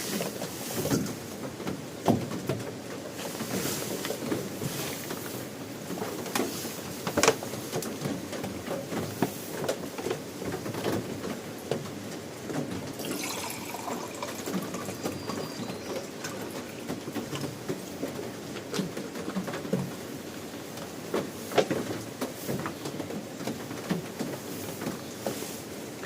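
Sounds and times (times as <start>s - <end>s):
water pouring into a pot: 13.0s - 17.0s.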